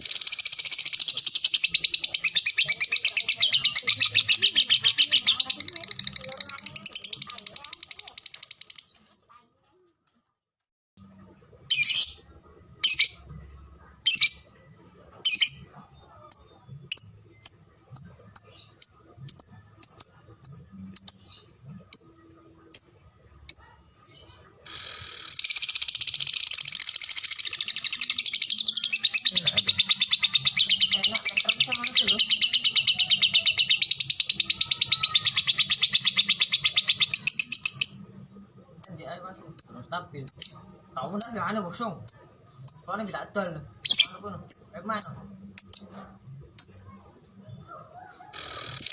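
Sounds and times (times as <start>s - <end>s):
lovebird rapid chatter: 0.0s - 9.2s, 24.7s - 38.0s, 48.3s - 48.9s
lovebird chirping: 11.2s - 48.9s.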